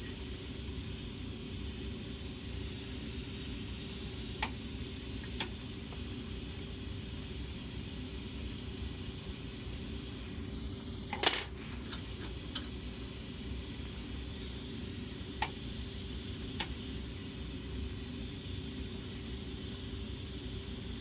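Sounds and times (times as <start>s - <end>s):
steady hiss: 0.0s - 21.0s.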